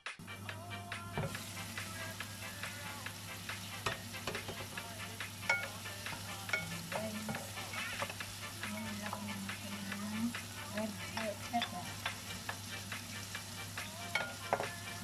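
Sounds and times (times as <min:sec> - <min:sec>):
vegetables sizzling in a pan: 0:00.2 - 0:15.0
utensil scraping a pan: 0:03.5 - 0:15.0.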